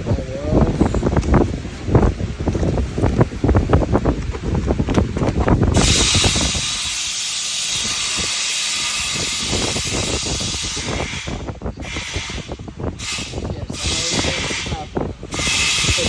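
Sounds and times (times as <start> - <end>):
low rumbling: 0.0 - 16.0
loud steady hiss: 5.5 - 16.0.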